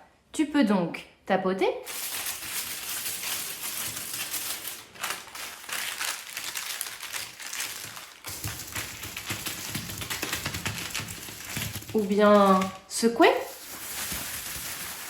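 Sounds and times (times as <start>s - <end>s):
fingers tapping small objects: 7.6s - 12.8s.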